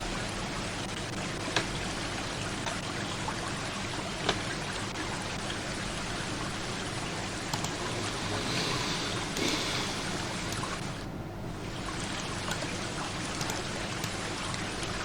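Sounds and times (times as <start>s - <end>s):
faint ticks: 7.5s - 7.8s, 13.3s - 14.2s
sharp clicks: 7.5s - 7.8s
hiss of running water: 7.6s - 11.1s.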